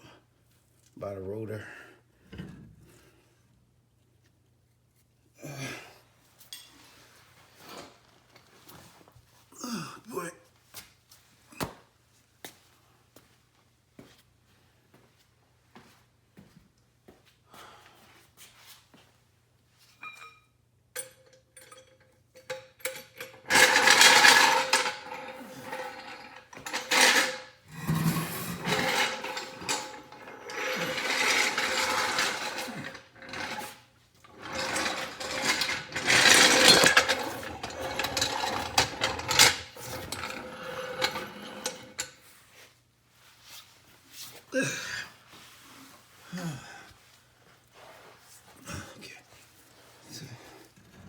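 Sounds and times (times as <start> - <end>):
loud metal scraping and rubbing: 23.5 - 42.1.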